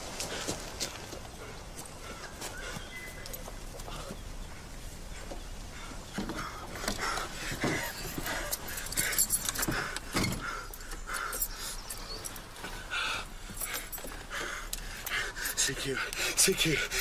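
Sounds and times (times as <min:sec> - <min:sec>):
keys jangling and clinking: 0:07.9 - 0:09.8.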